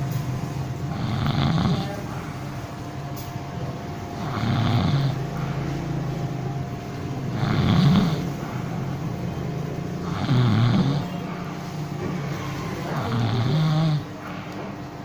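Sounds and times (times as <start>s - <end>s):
man snoring: 0.9s - 2.4s, 4.2s - 6.0s, 7.2s - 9.0s, 10.0s - 11.5s, 12.8s - 14.2s.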